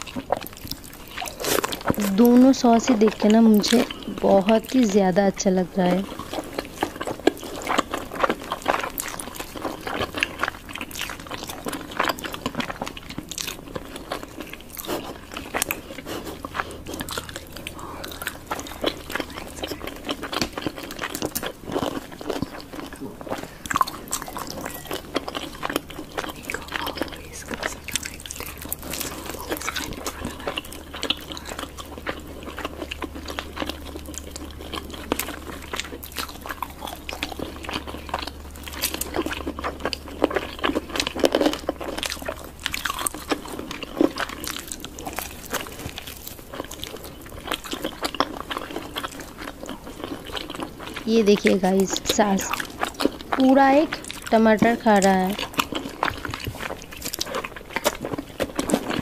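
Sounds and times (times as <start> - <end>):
wet mouth noises: 0.0 - 4.8, 5.5 - 59.0
crunchy chewing: 0.0 - 59.0.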